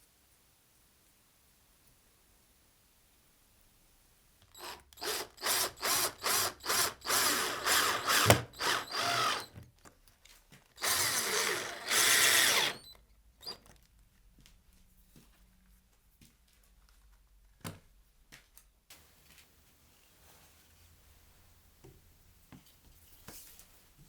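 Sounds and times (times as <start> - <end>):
power drill bursts: 4.5 - 9.6, 10.8 - 13.6.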